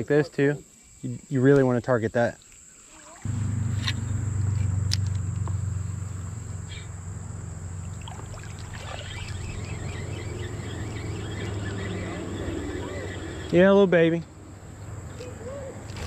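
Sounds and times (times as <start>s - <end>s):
creek water running: 1.2s - 16.0s
high-pitched insect buzz: 2.6s - 13.8s
faint chirps: 5.4s - 14.2s.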